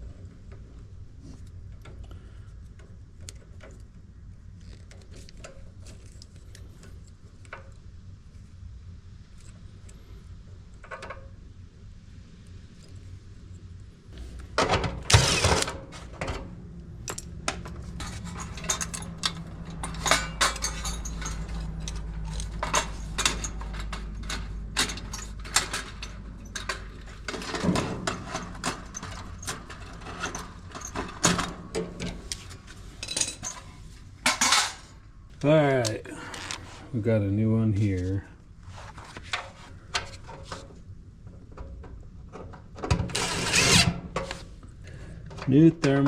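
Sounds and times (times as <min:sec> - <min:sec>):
metal clatter: 0:14.6 - 0:35.0
tools and metal parts clinking: 0:14.6 - 0:35.0.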